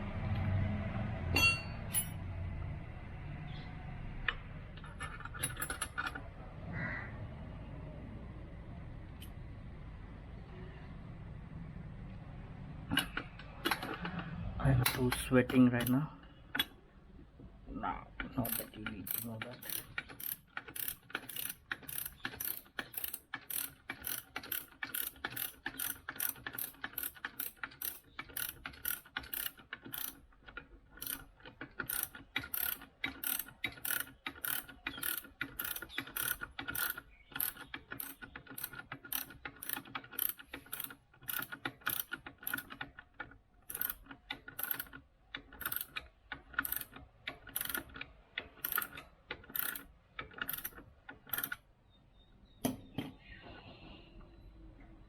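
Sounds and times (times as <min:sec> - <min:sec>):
ratchet wrench clicking: 0:18.4 - 0:30.2, 0:31.0 - 0:42.9, 0:43.7 - 0:46.0, 0:46.6 - 0:48.0, 0:48.6 - 0:51.6.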